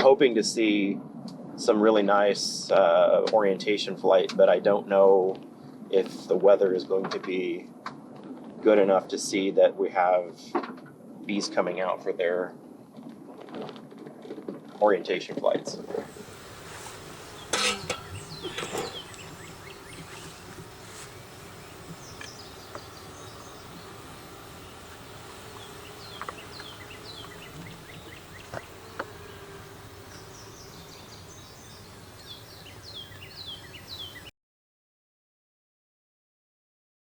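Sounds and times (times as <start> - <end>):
honey bees buzzing: 15.8 - 34.3.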